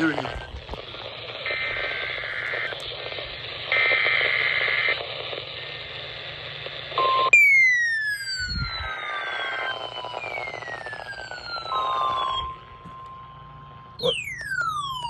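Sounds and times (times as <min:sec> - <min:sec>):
radio static: 0:00.0 - 0:07.3
digital tone bursts: 0:14.0 - 0:15.0.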